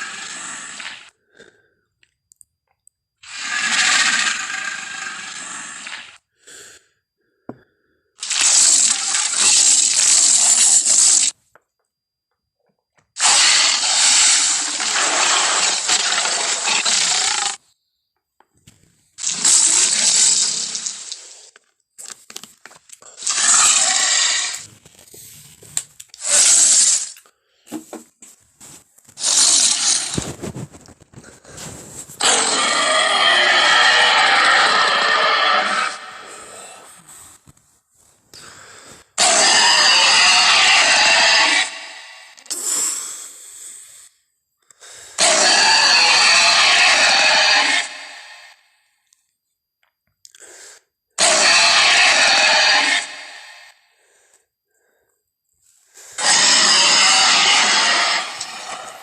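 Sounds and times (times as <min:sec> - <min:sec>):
dinosaur roars: 0:32.2 - 0:37.0, 0:39.2 - 0:42.0, 0:45.2 - 0:48.4, 0:51.2 - 0:53.7, 0:56.2 - 0:59.0.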